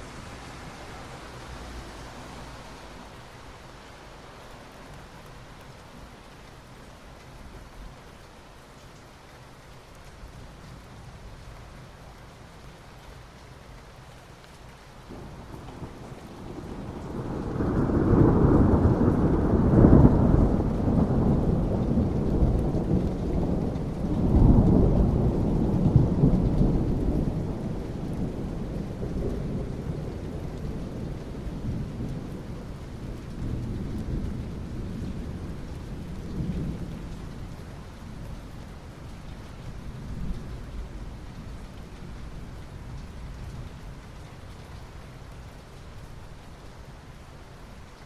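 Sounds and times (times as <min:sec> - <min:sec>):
rain on asphalt: 0:00.0 - 0:48.0
rolling thunder: 0:15.1 - 0:38.3.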